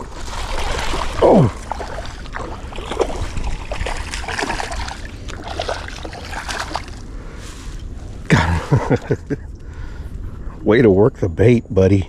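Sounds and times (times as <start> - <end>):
fish thrashing in water: 0.0 - 9.2.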